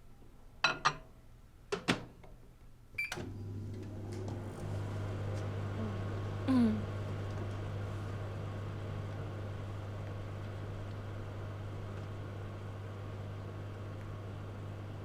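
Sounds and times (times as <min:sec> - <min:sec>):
steady low hum: 0:04.0 - 0:15.0.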